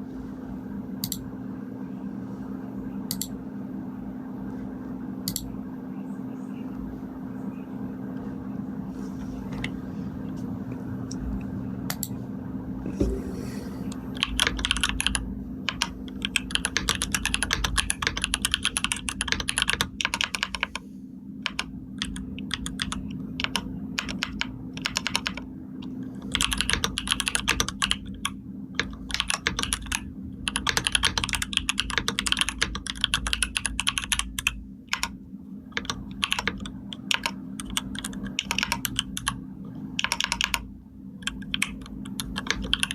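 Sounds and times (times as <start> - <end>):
steady low hum: 0.0 - 42.9
typing on computer keyboard: 14.2 - 20.8, 21.4 - 25.4, 26.3 - 39.4, 40.0 - 40.6, 41.2 - 42.9.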